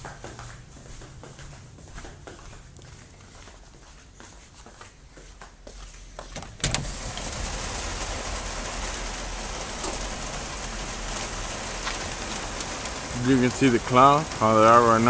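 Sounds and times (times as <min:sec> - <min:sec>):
heavy rain pouring: 0:06.6 - 0:15.0.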